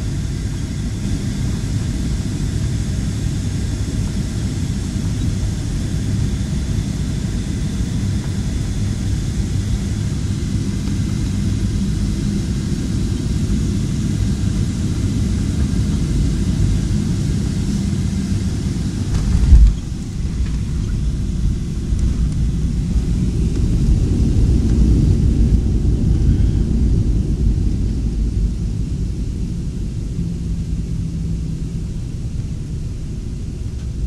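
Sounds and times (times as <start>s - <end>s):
airliner cabin engine rumble: 0.0s - 34.0s
loud low thump: 19.0s - 23.0s.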